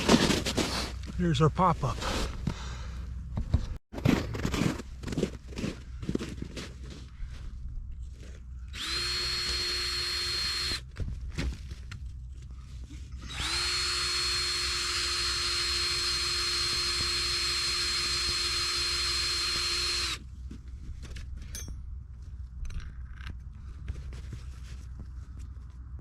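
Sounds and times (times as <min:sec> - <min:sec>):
electric drill boring ice: 0:08.7 - 0:10.8, 0:13.2 - 0:20.2.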